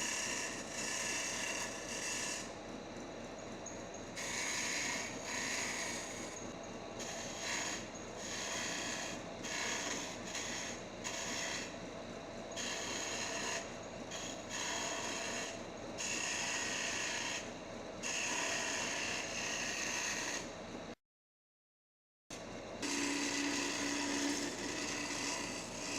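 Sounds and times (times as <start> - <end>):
tool scraping spinning wood: 0.0 - 2.6, 3.4 - 11.8, 12.5 - 20.6, 22.8 - 25.9
wood lathe running: 0.1 - 2.5, 4.2 - 6.4, 7.0 - 11.7, 12.5 - 20.5, 22.8 - 25.9.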